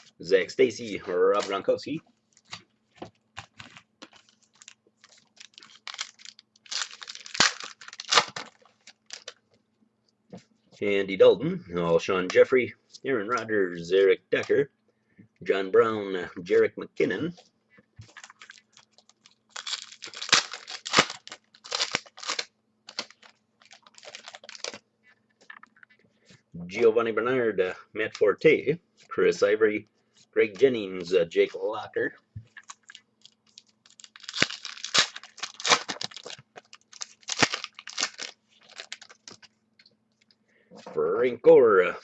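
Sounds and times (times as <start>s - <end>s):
cards flipping and rustling: 2.4s - 9.4s, 18.0s - 25.7s, 32.5s - 39.6s.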